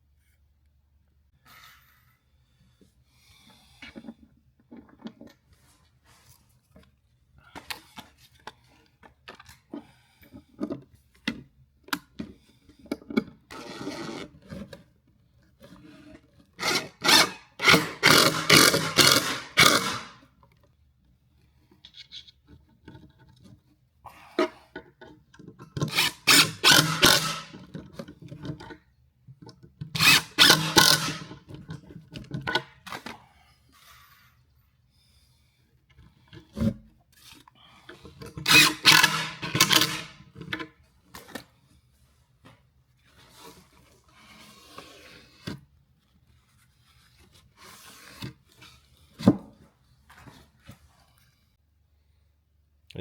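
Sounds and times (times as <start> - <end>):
drill boring into wood: 16.6 - 20.2, 25.9 - 27.6, 30.0 - 31.4, 38.5 - 40.1.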